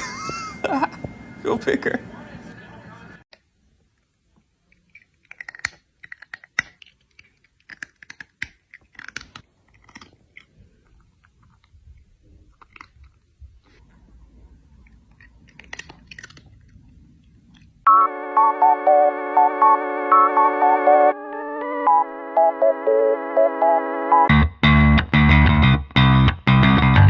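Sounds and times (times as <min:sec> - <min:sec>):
crunching hard food: 0:04.7 - 0:13.9, 0:14.7 - 0:17.8.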